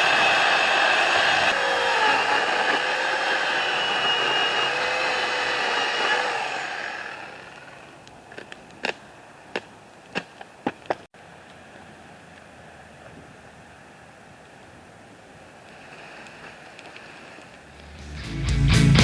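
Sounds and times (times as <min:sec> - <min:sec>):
small petrol engine running: 0:01.5 - 0:07.8.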